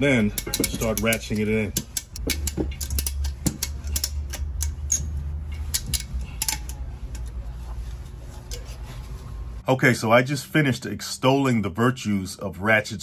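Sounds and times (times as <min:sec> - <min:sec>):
ratchet strap clicking: 0:00.2 - 0:07.4.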